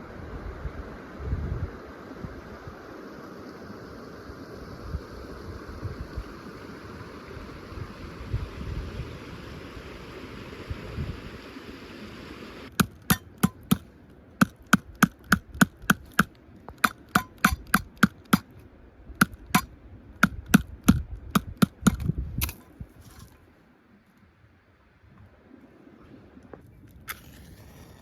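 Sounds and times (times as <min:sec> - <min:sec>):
wind-like rush: 0:00.0 - 0:12.7, 0:18.7 - 0:23.4
hand tool striking sharply: 0:12.8 - 0:13.8, 0:14.4 - 0:18.4.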